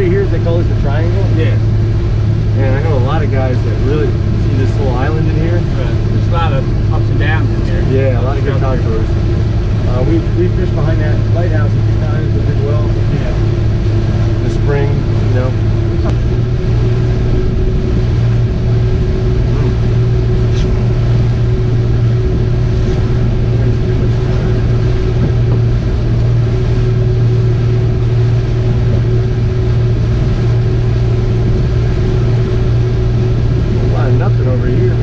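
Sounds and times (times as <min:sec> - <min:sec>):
boat engine drone: 0:00.0 - 0:35.0.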